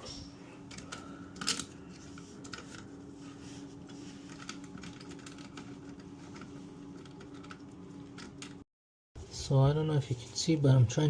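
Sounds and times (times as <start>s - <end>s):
faint steady hum: 0.0s - 8.6s.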